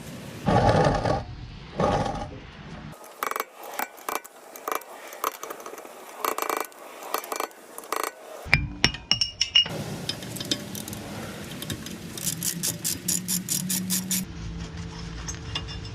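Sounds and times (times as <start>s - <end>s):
metal tools clinking: 3.0s - 11.0s
rough metal scraping: 12.2s - 15.9s.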